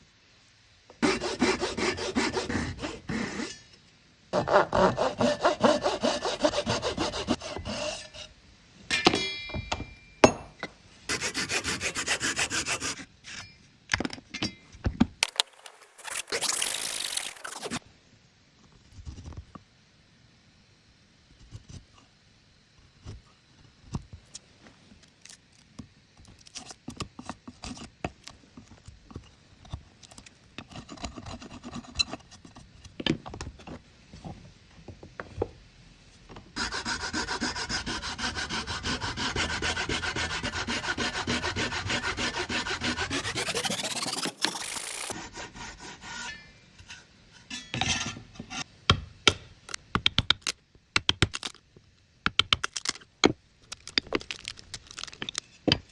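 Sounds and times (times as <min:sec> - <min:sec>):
rasping or sawing on wood: 0:01.0 - 0:03.6, 0:04.4 - 0:08.3, 0:11.1 - 0:13.1, 0:36.6 - 0:46.4
tools scraping and tapping wood: 0:52.3 - 0:55.9.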